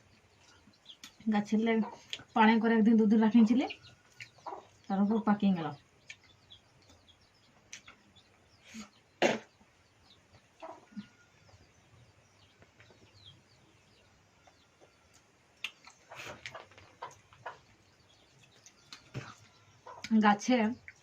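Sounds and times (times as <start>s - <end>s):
chickens clucking: 0.1s - 20.2s
faint high chirps: 9.9s - 16.3s.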